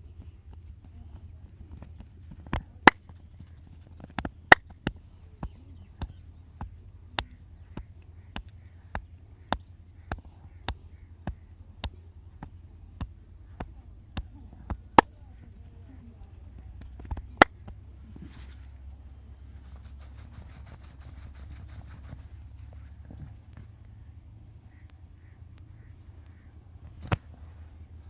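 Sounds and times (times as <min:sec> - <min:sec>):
hands slapping body: 0:02.5 - 0:03.2, 0:04.2 - 0:06.2.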